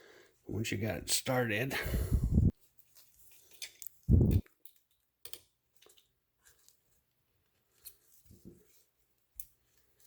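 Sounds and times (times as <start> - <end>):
metal tools clicking and tapping: 3.5 - 6.0.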